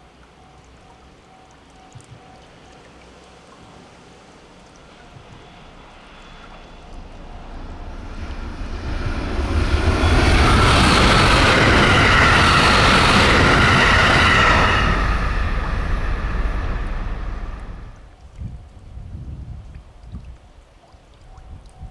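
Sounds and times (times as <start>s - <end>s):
electric train passing: 4.2s - 18.1s.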